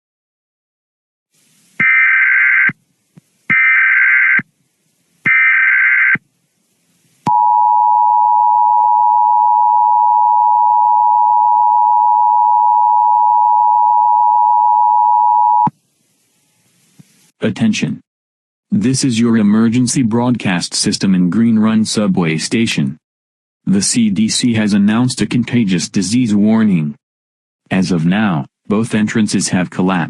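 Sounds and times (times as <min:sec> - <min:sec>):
buzzing data bursts: 0:01.8 - 0:02.8, 0:03.5 - 0:04.4, 0:05.3 - 0:06.2.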